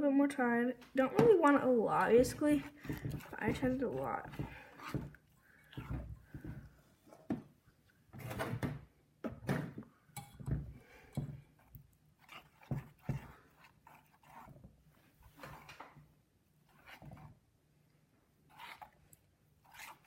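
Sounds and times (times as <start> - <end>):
slime squelching in a bowl: 1.0 - 6.8, 10.2 - 15.7, 16.6 - 17.5, 18.4 - 20.0.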